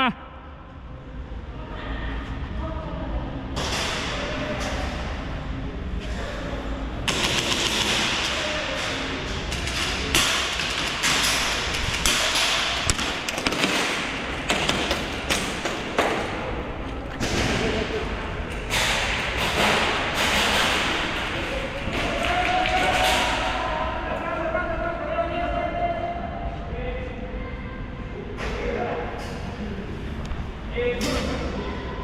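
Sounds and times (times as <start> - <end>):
airsoft guns firing: 7.1 - 8.4, 10.2 - 17.9.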